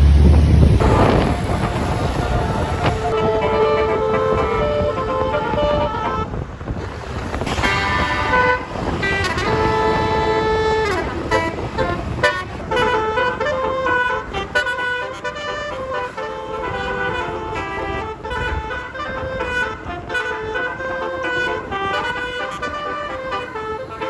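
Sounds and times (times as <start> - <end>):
low rumble: 0.0 - 4.8
musical air horn melody: 0.0 - 24.0.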